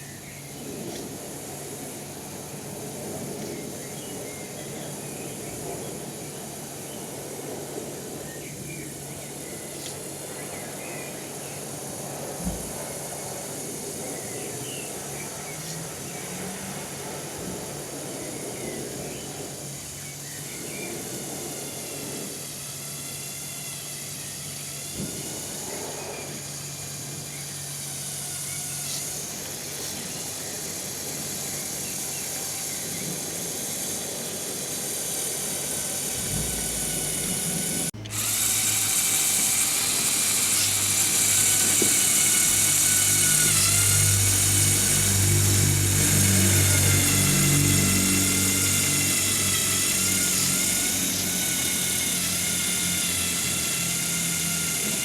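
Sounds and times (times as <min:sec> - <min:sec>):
small electric motors whining: 0:00.0 - 0:55.0.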